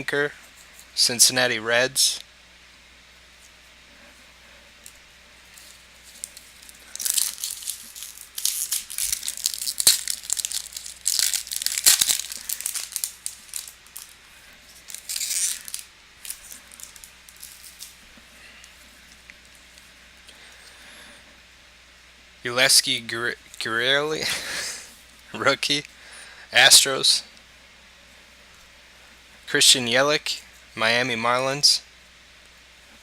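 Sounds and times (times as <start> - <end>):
plastic wrapper crinkling and tearing: 5.5 - 18.0.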